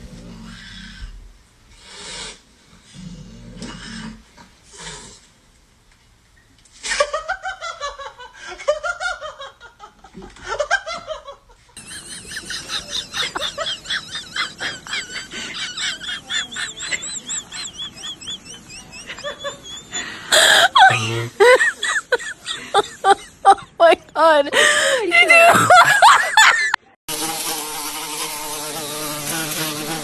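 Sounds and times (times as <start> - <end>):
person laughing: 8.0 - 26.9.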